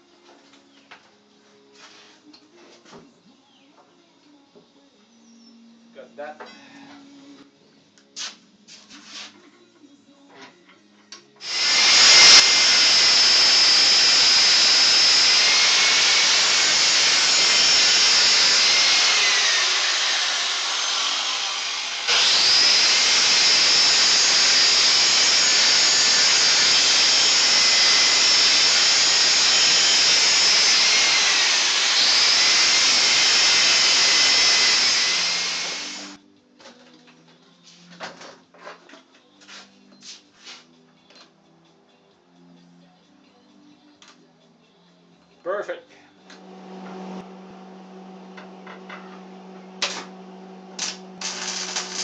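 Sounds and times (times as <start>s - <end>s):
electric drill boring into steel: 11.4s - 36.2s, 46.4s - 52.0s.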